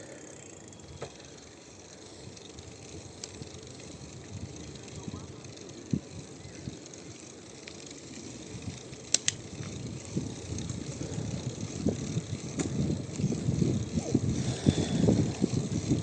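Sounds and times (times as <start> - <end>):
bicycle rumbling on rough road: 0.0 - 16.0
sharp rattling clicks: 2.3 - 13.5.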